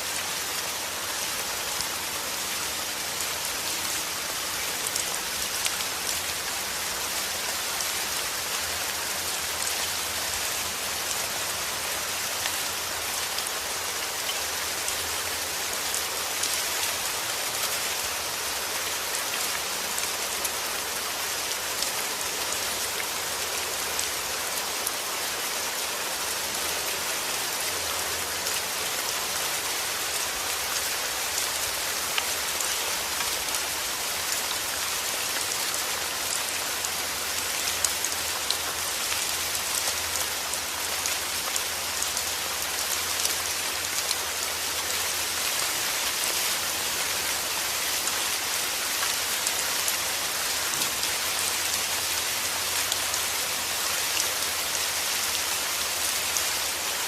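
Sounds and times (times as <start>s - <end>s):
heavy rain pattering: 0.0s - 57.0s.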